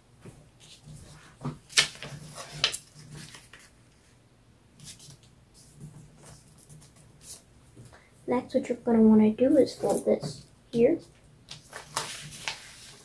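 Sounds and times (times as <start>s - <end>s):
paper rustling and crackling: 0.6s - 3.8s, 11.5s - 13.0s.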